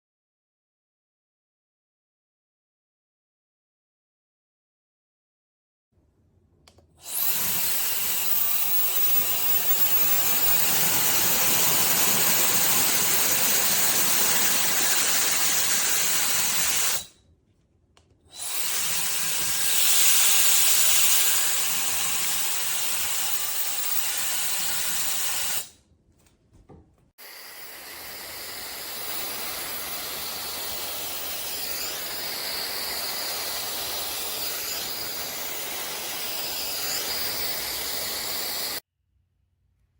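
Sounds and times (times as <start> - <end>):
hair dryer blowing: 7.0 - 17.1, 18.3 - 25.7, 27.2 - 38.8.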